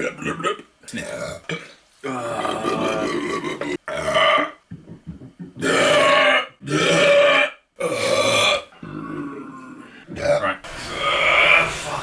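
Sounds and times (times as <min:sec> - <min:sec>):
person belching loudly: 0:01.2 - 0:04.6, 0:05.6 - 0:11.6.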